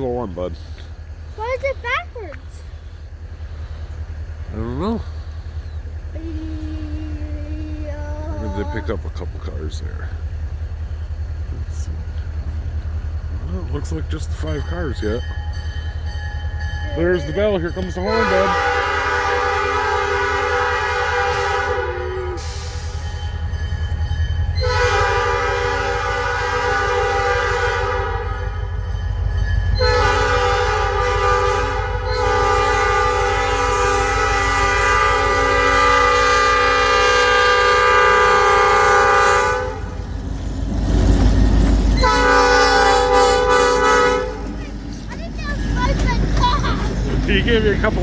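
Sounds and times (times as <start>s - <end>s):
train rumbling: 0.0s - 48.0s
locomotive air horn blasts: 18.1s - 23.1s, 24.6s - 28.7s, 29.8s - 40.0s, 42.0s - 44.5s.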